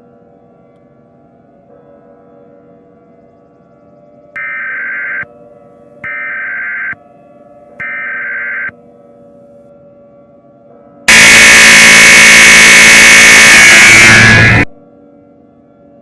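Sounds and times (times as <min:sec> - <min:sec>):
faint steady drone: 0:00.0 - 0:16.0
loud harsh blaring alarm: 0:01.7 - 0:15.4
shrill digital data bursts: 0:11.1 - 0:14.7.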